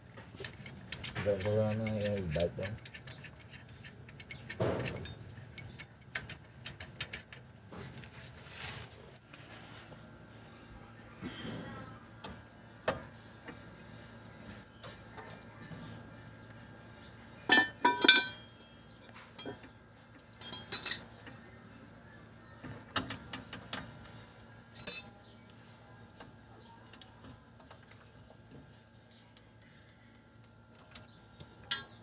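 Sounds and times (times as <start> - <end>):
metal tools clinking: 17.5 - 19.7, 20.3 - 21.1, 24.8 - 25.2.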